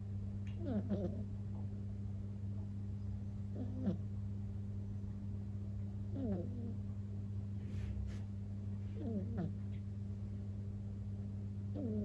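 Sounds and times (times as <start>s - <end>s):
kitten snoring: 0.6s - 1.2s, 3.5s - 4.0s, 6.1s - 6.8s, 9.0s - 9.5s, 11.7s - 12.0s.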